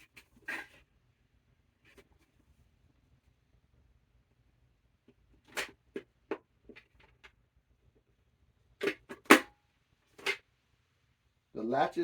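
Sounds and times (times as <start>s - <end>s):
plastic helmet clicking and knocking: 5.0s - 7.4s, 8.8s - 10.5s.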